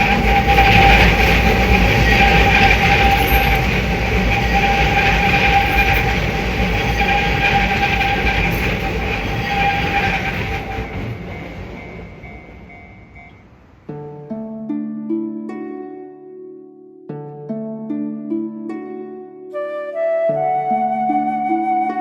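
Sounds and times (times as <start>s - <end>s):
train wheels squealing: 0.0s - 13.6s
train running rumble: 0.0s - 13.9s.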